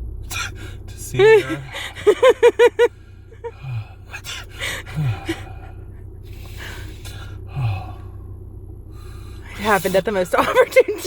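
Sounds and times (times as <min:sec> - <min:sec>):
low falling grunts: 0:00.2 - 0:11.0
person gasping and breathing hard: 0:03.5 - 0:08.1.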